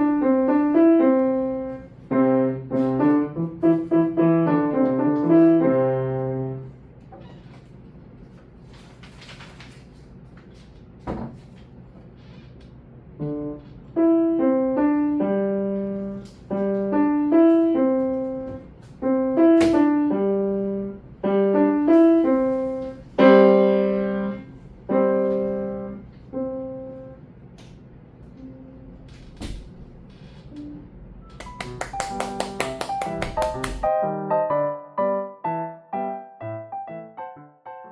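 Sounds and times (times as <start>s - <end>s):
piano playing children's song: 0.0s - 7.0s, 13.2s - 27.4s, 28.4s - 29.1s, 30.6s - 37.9s.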